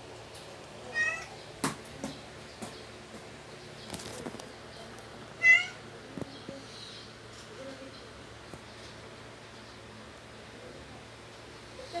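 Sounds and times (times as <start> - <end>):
cat meowing: 0.9 - 1.4, 5.4 - 5.8
faint clicks and rustles: 1.7 - 5.4.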